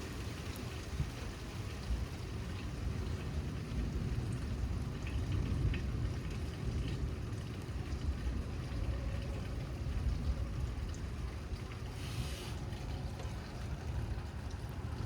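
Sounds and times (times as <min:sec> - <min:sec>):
wind buffeting microphone: 0:00.8 - 0:15.0.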